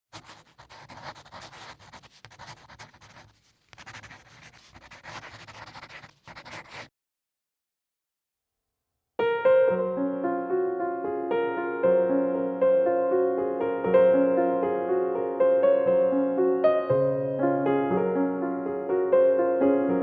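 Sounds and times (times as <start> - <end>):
scratchy rustling noise: 0.1 - 6.9
piano music: 9.2 - 20.0.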